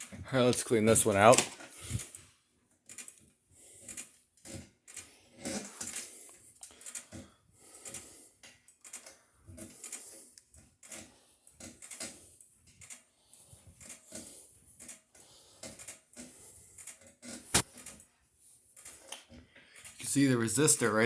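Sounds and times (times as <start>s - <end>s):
faint clicks and taps: 18.8s - 20.0s.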